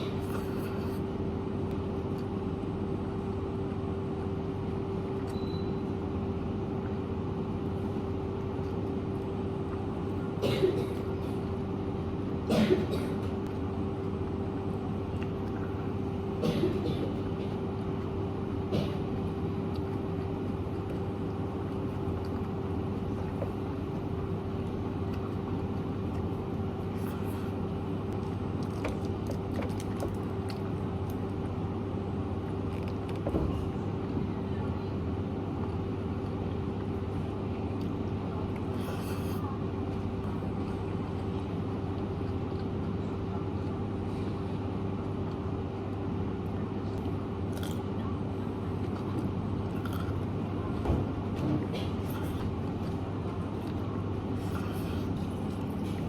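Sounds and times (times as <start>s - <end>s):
steady machine hum: 0.0s - 56.0s.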